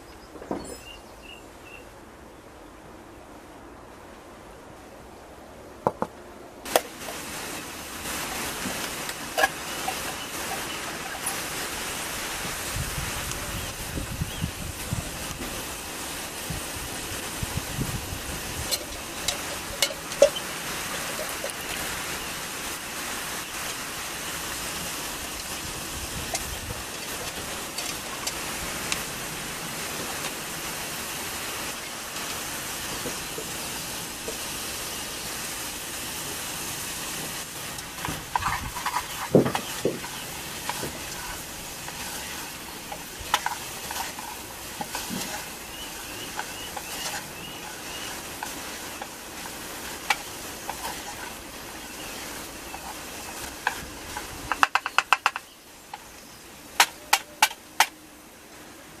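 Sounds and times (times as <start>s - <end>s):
onions sizzling in a pan: 6.7s - 57.9s
utensil scraping a metal pan: 18.6s - 21.8s, 38.0s - 54.3s.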